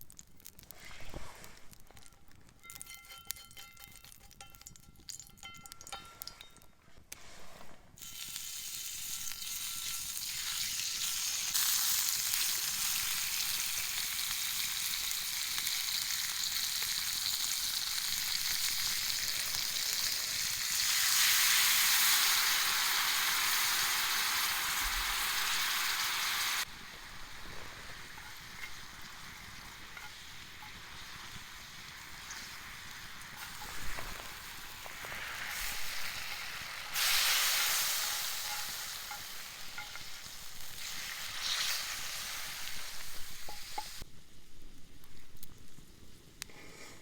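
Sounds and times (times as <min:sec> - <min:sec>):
food sizzling in a pan: 0:08.0 - 0:44.1.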